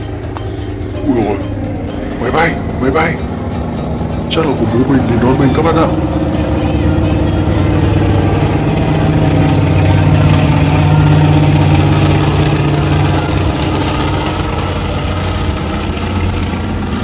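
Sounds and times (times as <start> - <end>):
aircraft engine drone overhead: 0.0 - 17.0.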